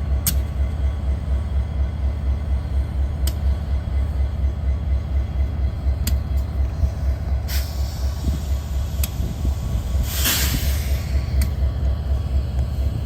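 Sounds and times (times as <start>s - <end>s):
diesel locomotive idling: 0.0s - 13.0s
short hisses: 7.5s - 9.4s, 10.0s - 11.4s.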